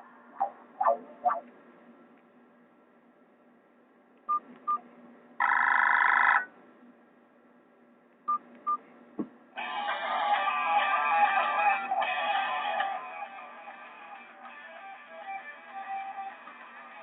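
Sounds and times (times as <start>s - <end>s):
phone ringtone: 5.4s - 6.5s.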